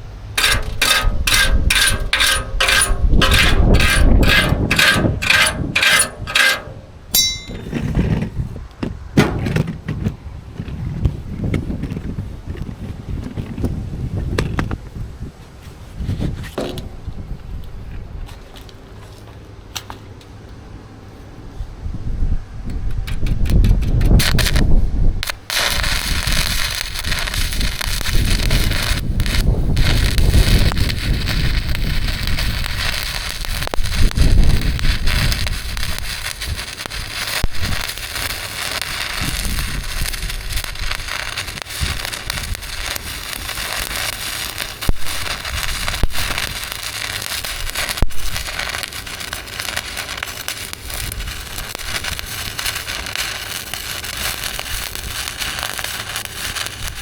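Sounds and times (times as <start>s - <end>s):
welding arc crackling: 0.0s - 7.5s, 23.0s - 57.0s.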